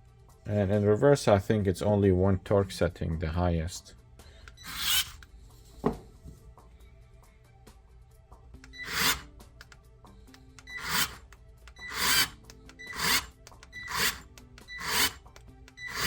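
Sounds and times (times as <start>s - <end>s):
cordless screwdriver straining: 4.5s - 5.2s, 8.7s - 9.8s, 10.6s - 16.0s.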